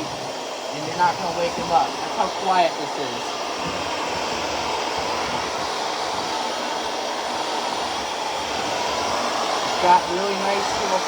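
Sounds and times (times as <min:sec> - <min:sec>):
vacuum cleaner suction motor humming: 0:00.0 - 0:11.0.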